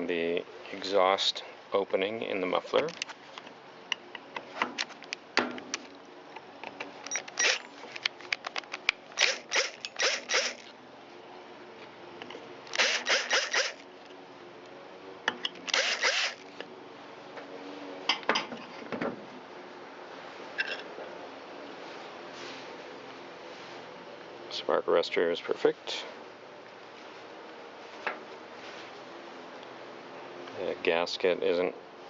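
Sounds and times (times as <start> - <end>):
short noisy bursts: 9.2 - 10.6, 12.7 - 13.8, 15.7 - 16.5.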